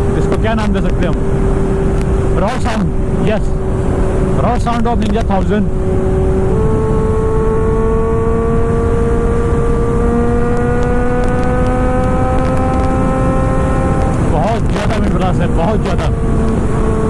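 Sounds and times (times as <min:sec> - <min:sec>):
motorcycle engine accelerating: 0:00.0 - 0:17.0
wind rush on microphone: 0:00.0 - 0:17.0.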